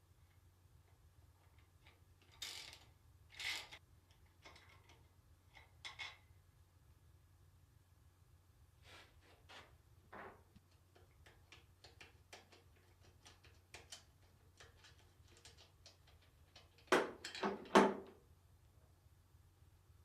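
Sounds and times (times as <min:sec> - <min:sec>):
metallic clicks of hand tools: 0:10.7 - 0:17.6.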